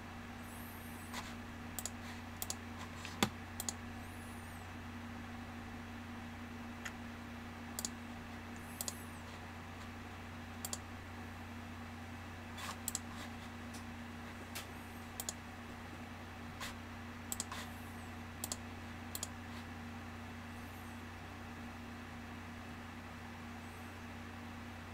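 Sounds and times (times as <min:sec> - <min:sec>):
low electrical hum: 0:00.0 - 0:24.9
mouse and keyboard clicks: 0:01.8 - 0:03.8, 0:08.6 - 0:09.0, 0:10.6 - 0:10.8, 0:12.7 - 0:13.1, 0:17.3 - 0:17.7, 0:18.4 - 0:19.3.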